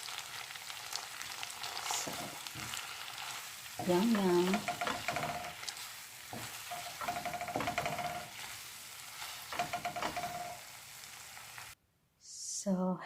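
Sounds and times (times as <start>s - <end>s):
pasta sizzling in a pan: 0.0s - 11.8s
utensil stirring and scraping: 1.7s - 10.6s.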